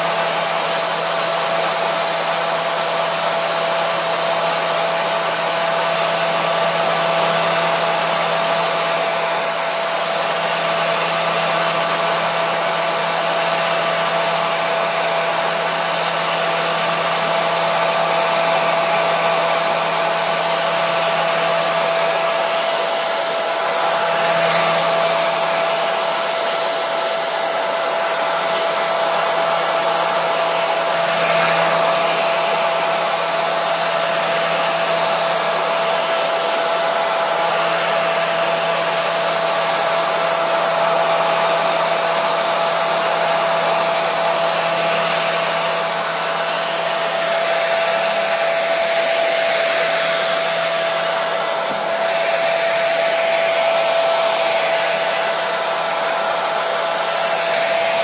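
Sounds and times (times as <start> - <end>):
hair dryer blowing: 0.0 - 58.0.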